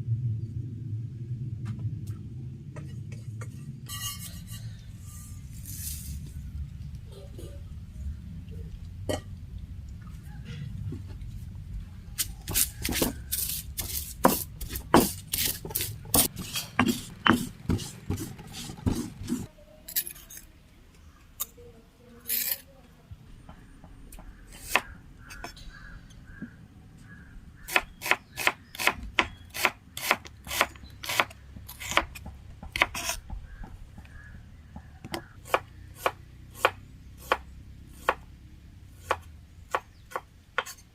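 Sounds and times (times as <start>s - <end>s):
knife chopping on wooden board: 12.5s - 13.2s, 13.8s - 19.5s, 27.7s - 34.3s, 35.1s - 37.4s, 38.0s - 38.2s.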